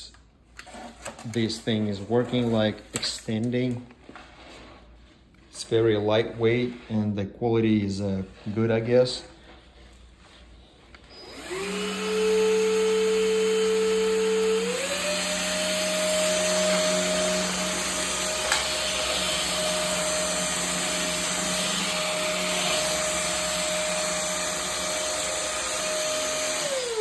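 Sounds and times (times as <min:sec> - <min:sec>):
vacuum cleaner motor whining: 0:11.0 - 0:27.0.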